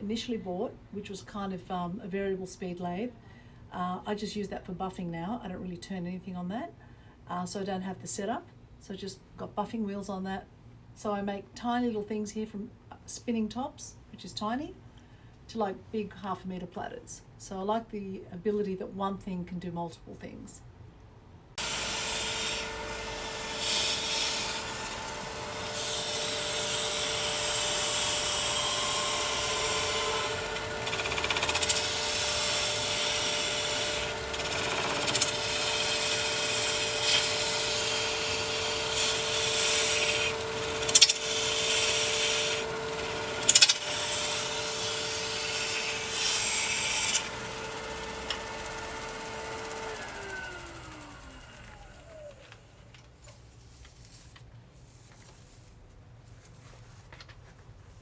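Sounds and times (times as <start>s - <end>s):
tool scraping spinning wood: 21.6s - 52.4s
wood lathe motor whine: 21.6s - 52.7s.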